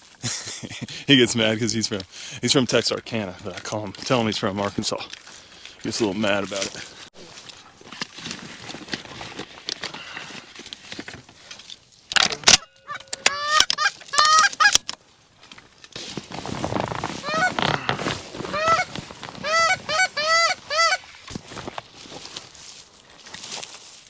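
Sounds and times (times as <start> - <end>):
geese honking: 12.5 - 14.8, 17.2 - 21.0.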